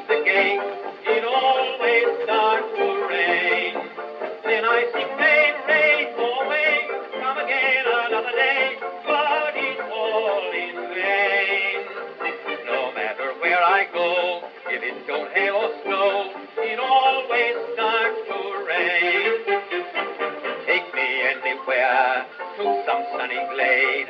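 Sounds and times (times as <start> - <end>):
old band recording with vibrato: 0.0 - 24.0.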